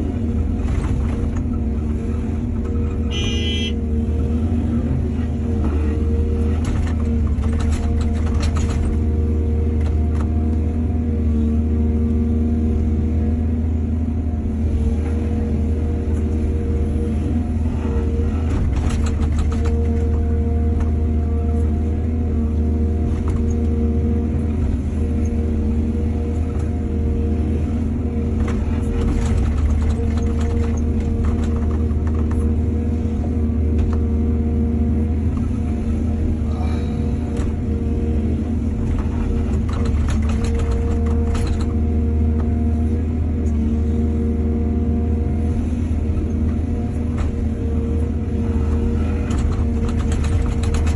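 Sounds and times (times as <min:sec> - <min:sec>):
diesel engine running: 0:00.0 - 0:50.9
knocks and rattles: 0:28.4 - 0:32.5, 0:38.9 - 0:41.8, 0:49.2 - 0:50.9.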